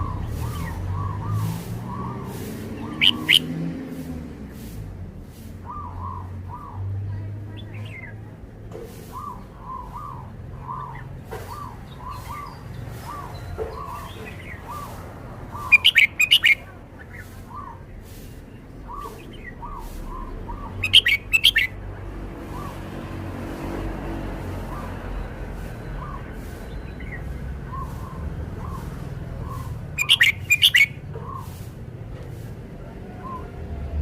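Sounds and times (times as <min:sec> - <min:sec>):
bird song bursts: 0:00.0 - 0:03.7, 0:09.1 - 0:21.8, 0:24.7 - 0:31.6
soft short bird chirps: 0:02.9 - 0:03.5, 0:15.6 - 0:18.2, 0:18.8 - 0:21.8, 0:26.0 - 0:31.6.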